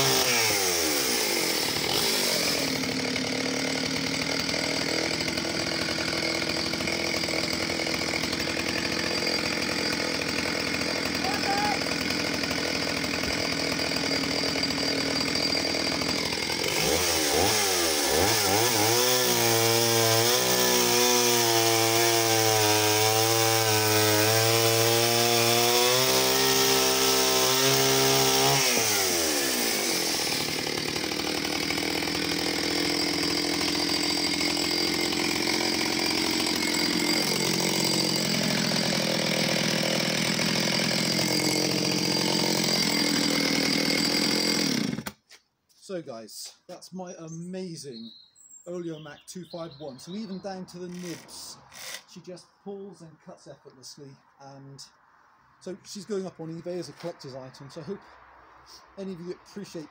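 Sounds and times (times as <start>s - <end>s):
chainsaw cutting wood: 0.0s - 45.5s, 50.3s - 52.4s.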